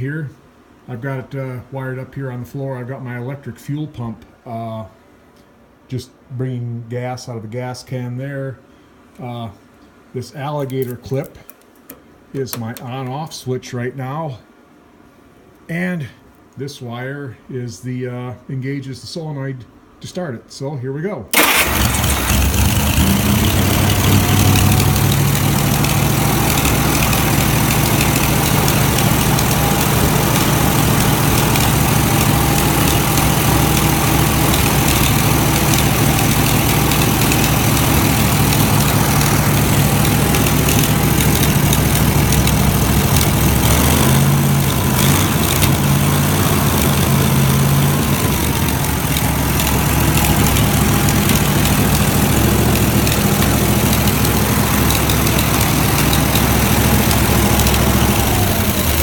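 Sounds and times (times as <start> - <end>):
engine running steadily: 21.4 - 59.0.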